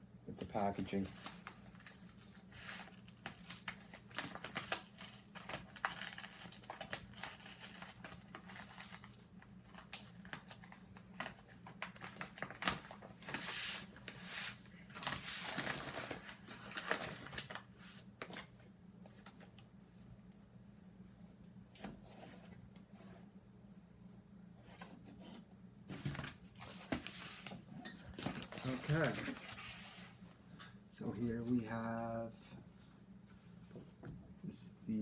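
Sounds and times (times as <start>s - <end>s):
faint low hum: 0.0s - 35.0s
packaging tearing and crinkling: 1.2s - 13.9s.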